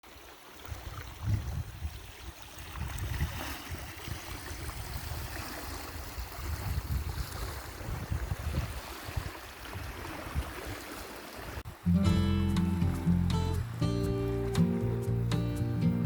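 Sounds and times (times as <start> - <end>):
water lapping at shore: 0.0 - 16.0
wind buffeting microphone: 0.7 - 10.9.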